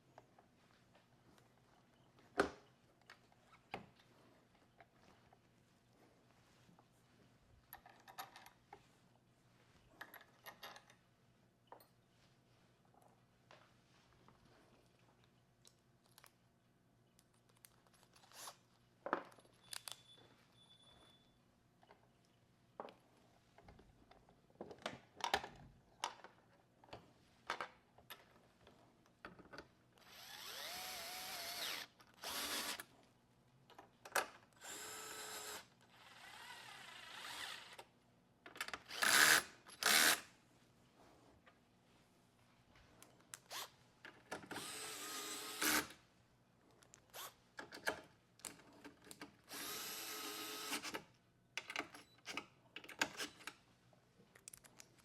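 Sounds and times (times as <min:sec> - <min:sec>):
cordless drill driving bolts: 0:30.0 - 0:32.8, 0:34.6 - 0:37.8, 0:38.8 - 0:40.2, 0:44.5 - 0:46.0, 0:49.5 - 0:50.9.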